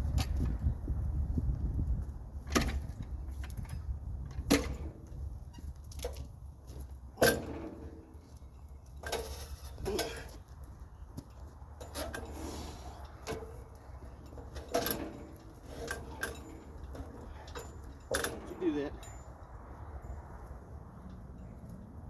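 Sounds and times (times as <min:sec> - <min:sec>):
knocks and metal clanks: 0:07.2 - 0:08.3, 0:11.2 - 0:19.3.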